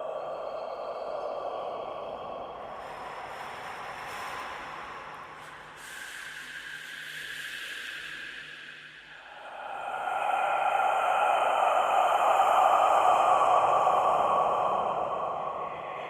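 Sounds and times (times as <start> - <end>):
breathy hissing whisper: 0.0 - 16.0.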